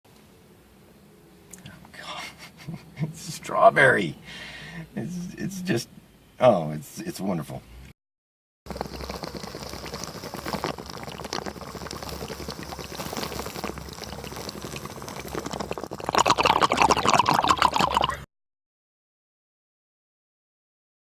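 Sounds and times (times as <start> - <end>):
liquid bubbling: 8.7 - 18.3.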